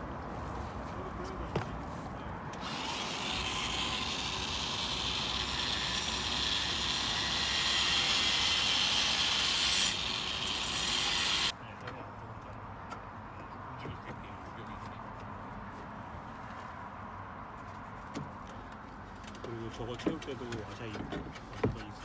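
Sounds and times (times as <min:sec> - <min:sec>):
power tool cutting: 0:02.6 - 0:11.5.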